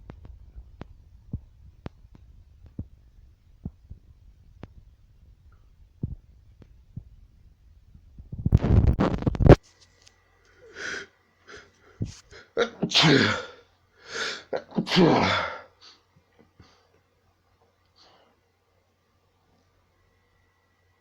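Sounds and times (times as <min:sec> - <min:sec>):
person sneezing: 0:10.8 - 0:16.0.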